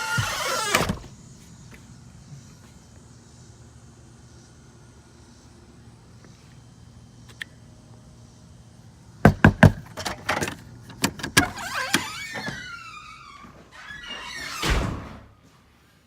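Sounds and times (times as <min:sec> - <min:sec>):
high squeal sliding down: 0:00.0 - 0:01.0.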